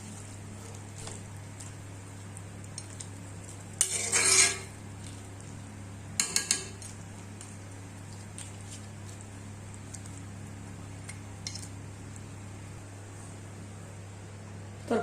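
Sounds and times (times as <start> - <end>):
steady low hum: 0.0 - 15.0
metal spoon scraping a pot: 3.8 - 4.8.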